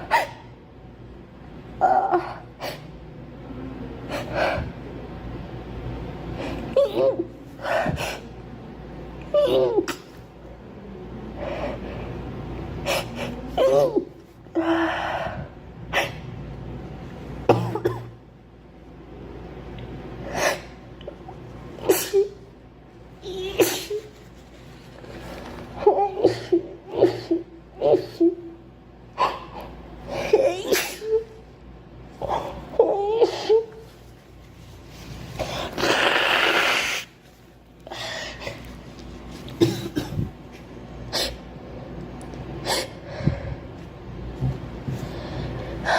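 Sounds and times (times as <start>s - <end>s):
girl sneezing: 23.4s - 24.1s.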